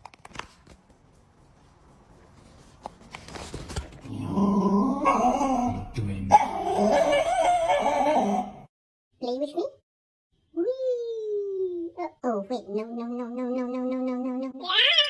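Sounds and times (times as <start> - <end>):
dog howling: 4.1 - 8.7.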